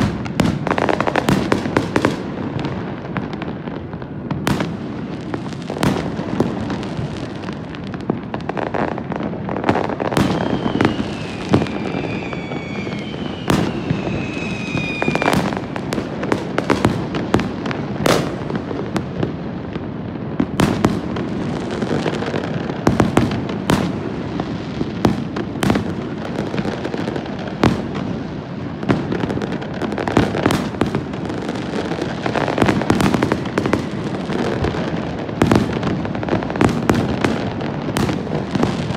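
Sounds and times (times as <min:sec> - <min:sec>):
fireworks crackling and banging: 0:00.0 - 0:38.9
falling firework whistles: 0:09.6 - 0:16.8.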